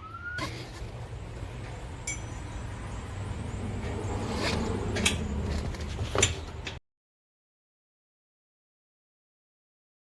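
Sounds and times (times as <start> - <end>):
metallic clink with ring: 2.0 - 2.6.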